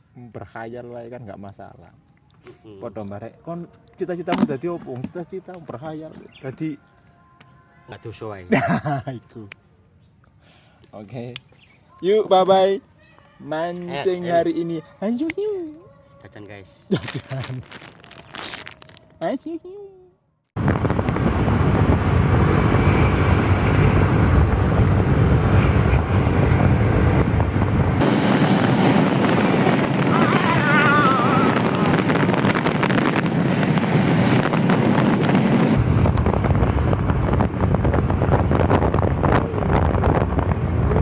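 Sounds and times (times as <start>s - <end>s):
vehicle engine rumbling: 20.6s - 41.0s
wind buffeting microphone: 20.6s - 41.0s.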